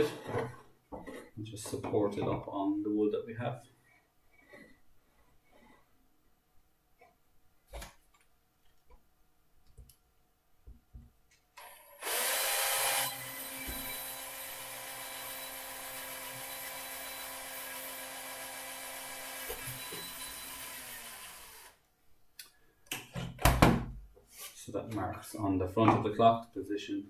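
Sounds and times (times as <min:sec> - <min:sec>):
cordless drill drilling wood: 0:11.6 - 0:21.8.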